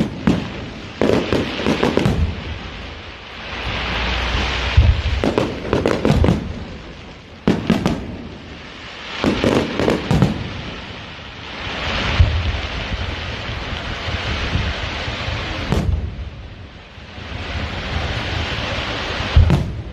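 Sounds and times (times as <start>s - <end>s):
fireworks shells bursting: 0.0s - 3.0s, 3.6s - 11.1s
hissing crackle of fireworks: 0.0s - 19.9s.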